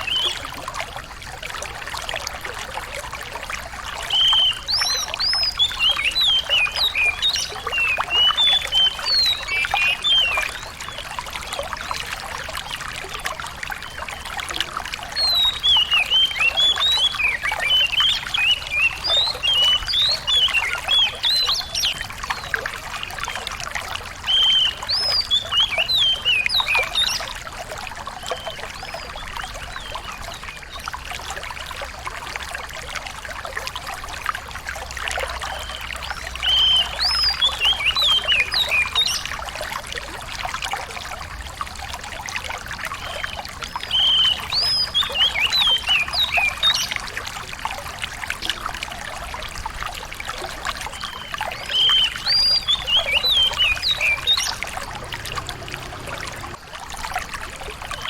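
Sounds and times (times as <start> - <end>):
songbird singing: 0.0 - 0.4, 4.0 - 12.0, 15.2 - 23.2, 24.2 - 27.4, 35.5 - 39.3, 43.0 - 46.9, 50.9 - 56.6
trickle of running water: 0.0 - 58.0.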